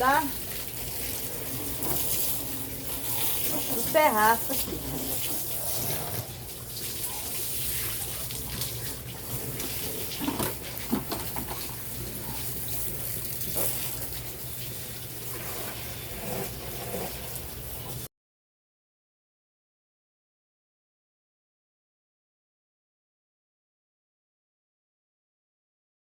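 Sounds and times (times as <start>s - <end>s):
water running: 0.0s - 18.1s.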